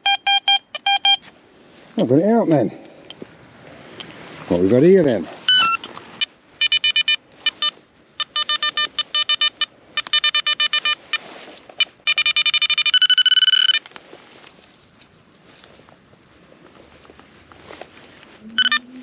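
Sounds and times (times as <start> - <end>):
metal detector beeps: 0.0 - 1.3, 5.4 - 13.9, 18.5 - 18.9
metal detector held tone: 0.0 - 1.3, 5.5 - 13.9, 18.5 - 18.9.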